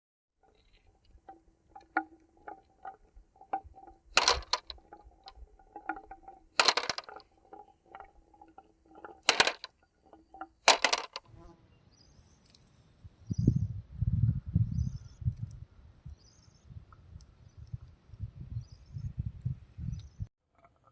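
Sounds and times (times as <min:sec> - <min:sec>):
loud clatter of marbles: 0:00.4 - 0:11.2
marbles clicking down a track: 0:01.3 - 0:11.2.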